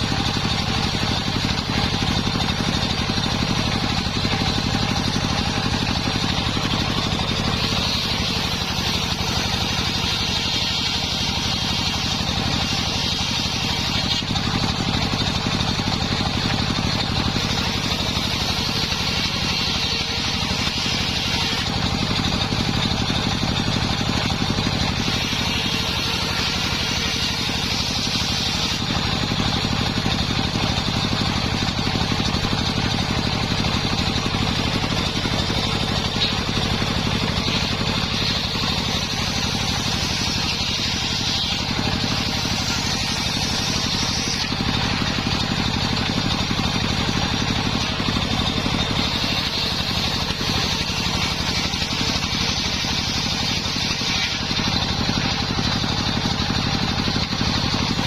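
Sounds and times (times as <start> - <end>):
engine running steadily: 0.0 - 58.0.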